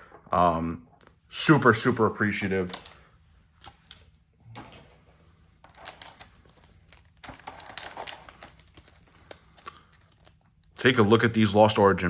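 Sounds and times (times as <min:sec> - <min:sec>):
card packs rustling and clicking: 0:02.3 - 0:11.0.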